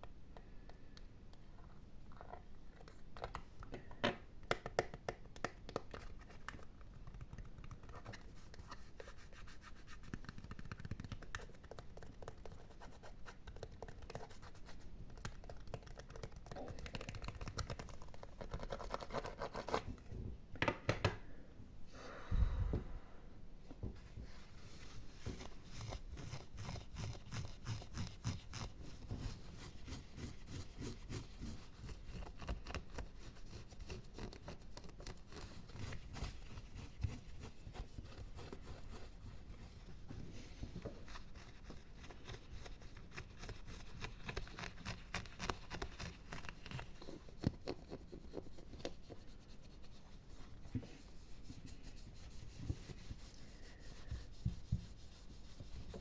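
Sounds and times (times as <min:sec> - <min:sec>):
fingernails scratching an object: 0:25.3 - 0:39.4.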